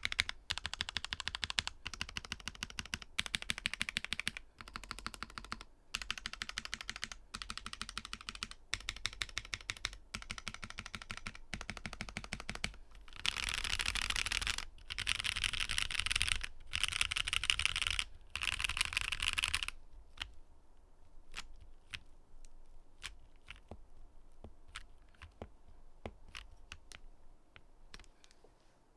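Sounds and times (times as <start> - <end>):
mechanical keyboard typing: 0.0 - 20.4.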